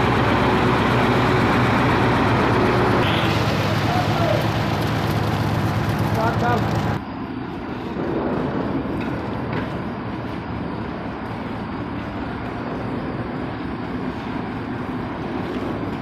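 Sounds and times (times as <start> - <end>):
concrete mixer truck running: 0.0 - 16.0.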